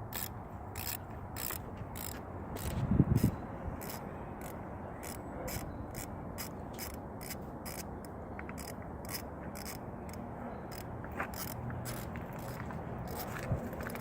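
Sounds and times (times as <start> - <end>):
hand ratchet clicking: 0.1 - 14.0.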